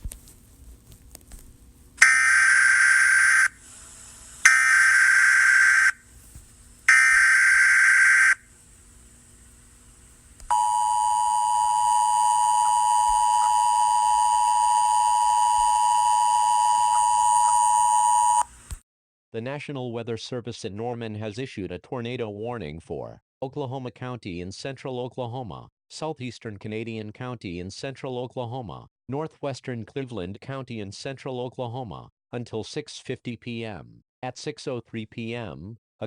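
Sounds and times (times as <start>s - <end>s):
digital data-burst tones: 4.5s - 6.0s
two-tone attention signal: 10.5s - 18.4s.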